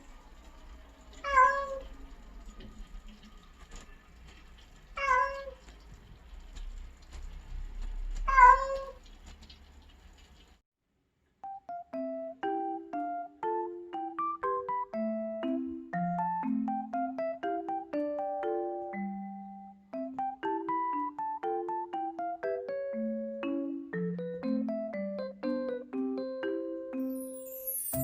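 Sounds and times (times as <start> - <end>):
cat meowing: 1.2 - 1.9, 5.0 - 5.7, 8.3 - 9.0
gentle piano music: 11.4 - 28.0.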